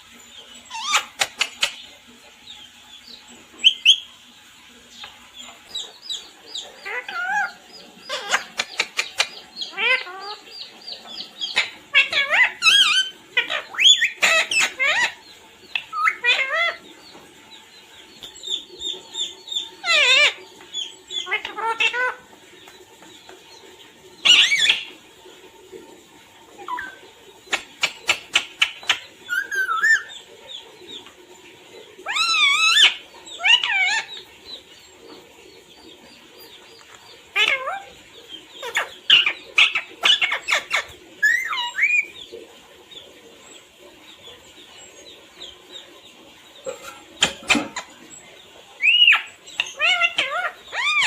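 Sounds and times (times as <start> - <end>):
parrot warbling and chirping: 0.2 - 1.9, 5.0 - 16.8, 18.3 - 22.3, 24.2 - 25.0, 26.6 - 30.6, 32.0 - 34.3, 37.3 - 42.3, 48.8 - 51.0.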